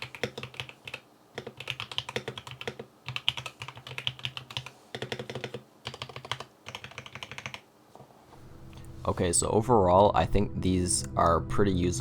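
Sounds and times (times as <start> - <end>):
mechanical keyboard typing: 0.0 - 7.7.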